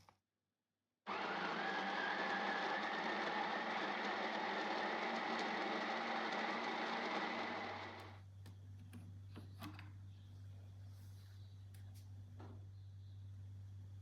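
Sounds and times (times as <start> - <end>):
small appliance motor running: 1.1 - 8.2.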